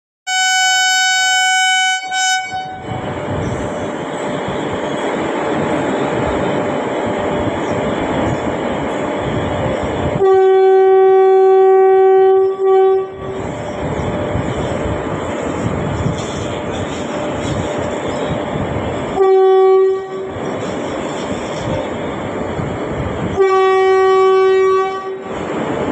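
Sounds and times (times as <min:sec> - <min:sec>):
locomotive horn blasts: 0:00.3 - 0:03.1, 0:10.2 - 0:13.4, 0:19.2 - 0:20.3, 0:23.3 - 0:25.4
train running rumble: 0:00.4 - 0:25.9.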